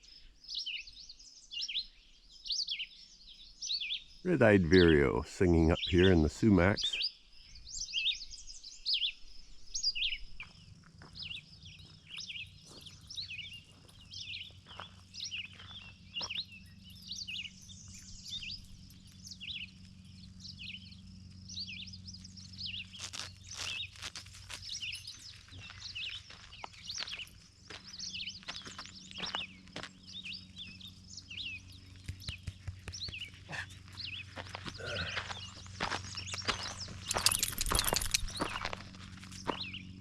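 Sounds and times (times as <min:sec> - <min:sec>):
birds chirping: 0:00.0 - 0:40.0
vireo song phrases: 0:04.3 - 0:07.0.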